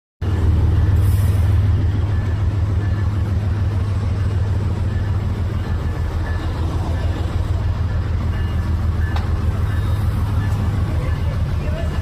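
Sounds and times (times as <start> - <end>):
locomotive engine rumbling: 0.2 - 12.0.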